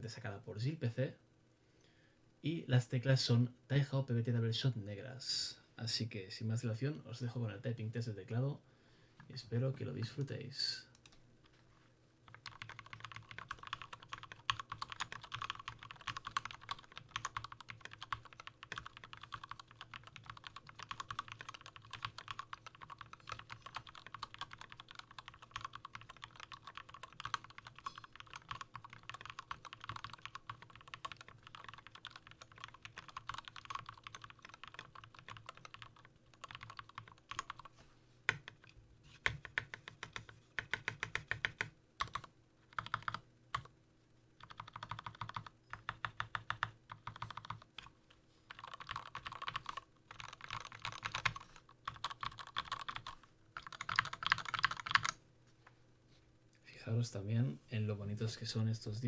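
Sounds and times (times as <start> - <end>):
fast typing on mechanical keyboard: 12.3 - 37.7, 39.2 - 43.7, 44.4 - 47.9, 48.5 - 55.2.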